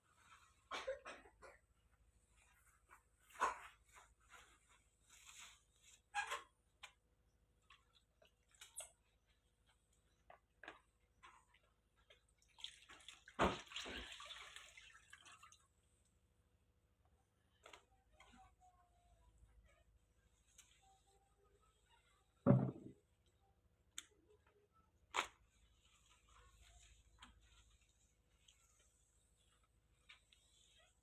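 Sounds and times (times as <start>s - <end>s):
water dripping and splashing: 12.1s - 15.7s
water sloshing: 12.4s - 15.7s
thump and splash: 12.6s - 15.4s, 22.4s - 22.9s.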